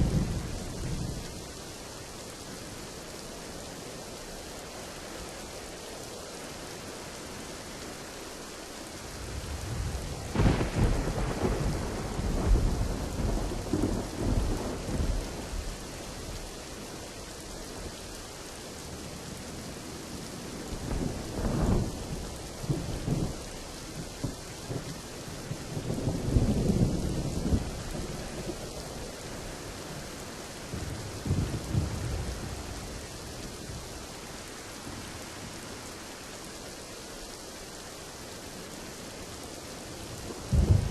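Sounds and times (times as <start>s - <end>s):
steady rain: 0.0s - 40.9s
rolling thunder: 9.2s - 15.8s, 30.6s - 33.8s, 40.2s - 40.9s.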